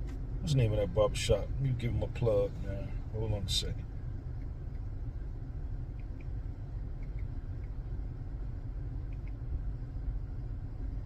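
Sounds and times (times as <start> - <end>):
car cabin rumble: 0.0 - 11.0
faint light ticks: 9.0 - 9.4.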